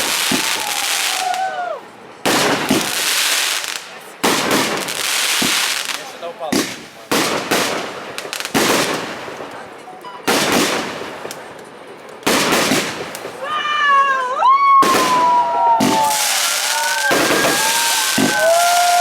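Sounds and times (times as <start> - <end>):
loud firework bangs: 0.0 - 1.2, 2.2 - 3.6, 4.2 - 9.5, 10.3 - 11.3, 12.2 - 13.4, 14.8 - 19.0
firework bursts and crackle: 0.0 - 1.6, 2.2 - 19.0
whistling fireworks shrieking: 0.0 - 1.8, 13.3 - 19.0.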